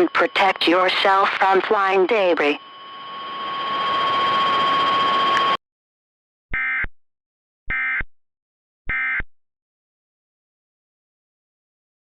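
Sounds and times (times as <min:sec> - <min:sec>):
digital data tone bursts: 0:00.0 - 0:05.6.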